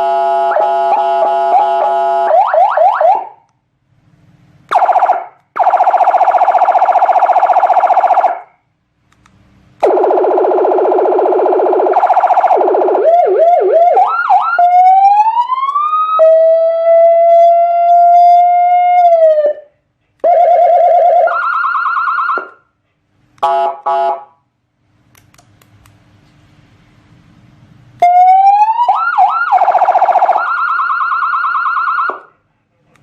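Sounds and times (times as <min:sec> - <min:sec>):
electronic siren tones: 0:09.8 - 0:19.6.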